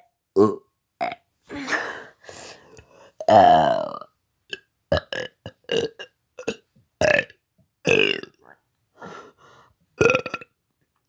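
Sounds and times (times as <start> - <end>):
man burping: 0.4 - 1.2, 3.2 - 8.4, 10.0 - 10.6.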